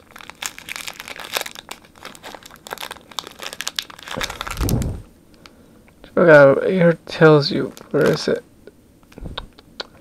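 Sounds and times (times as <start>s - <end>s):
foil wrapper crinkling: 0.0s - 4.9s, 7.5s - 8.4s.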